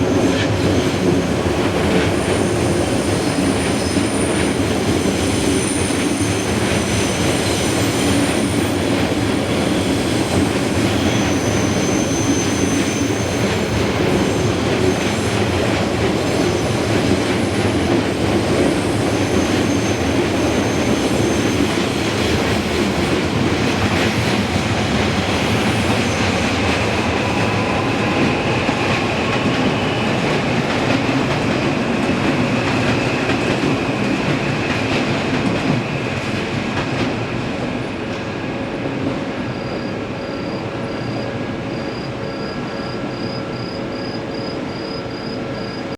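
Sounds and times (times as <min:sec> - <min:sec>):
train wheels rumbling on rails: 0:00.0 - 0:45.9
high wheel squeal: 0:02.2 - 0:15.2, 0:18.8 - 0:21.8.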